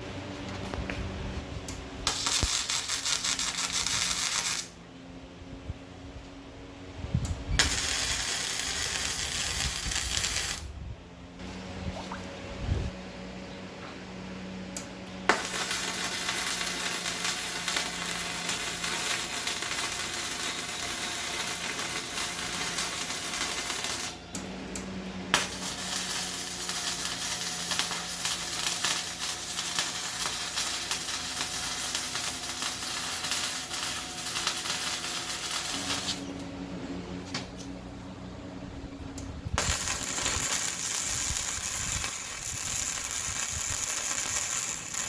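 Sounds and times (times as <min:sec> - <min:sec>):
welding arc crackling: 0:02.0 - 0:04.8, 0:07.6 - 0:10.7, 0:15.3 - 0:24.2, 0:24.8 - 0:36.3, 0:39.6 - 0:45.0.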